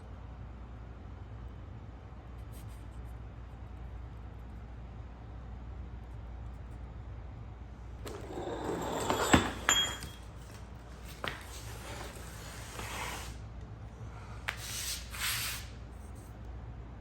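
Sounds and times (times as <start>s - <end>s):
handling and rubbing noise: 8.0s - 13.4s
sharp clinks of hard objects: 8.1s - 10.6s.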